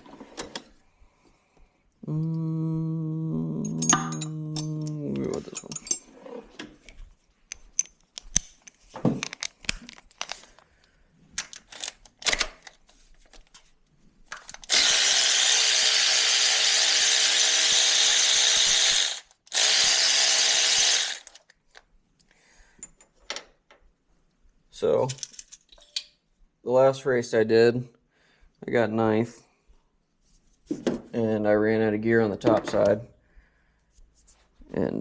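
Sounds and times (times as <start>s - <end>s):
hand tools clinking: 3.6s - 6.2s
power driver whirring: 14.6s - 21.4s.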